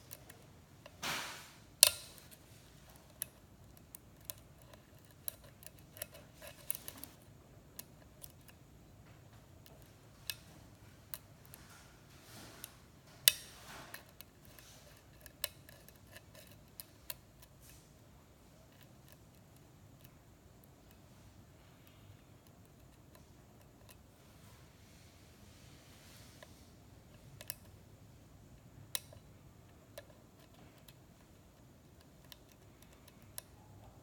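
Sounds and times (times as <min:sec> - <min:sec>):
lock pick metallic clicks: 0:01.8 - 0:07.1, 0:13.3 - 0:17.5, 0:28.9 - 0:29.3
lock pick scraping: 0:01.8 - 0:08.7, 0:09.6 - 0:17.8.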